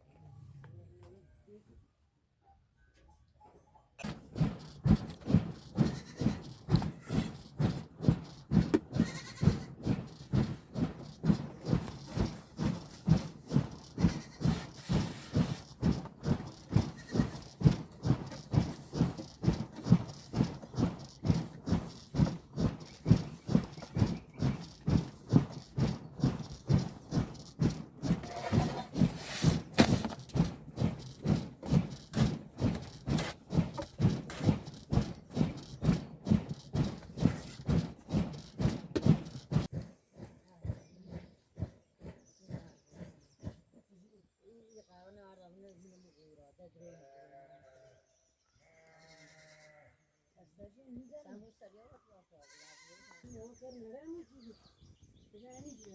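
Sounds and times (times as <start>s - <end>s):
regular low thumping: 4.0s - 43.6s.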